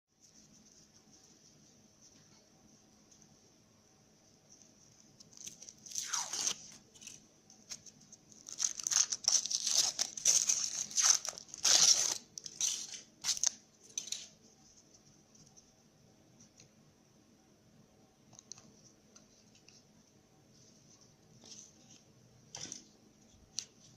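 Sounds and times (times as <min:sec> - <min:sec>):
foil wrapper crinkling and tearing: 0:08.4 - 0:13.6.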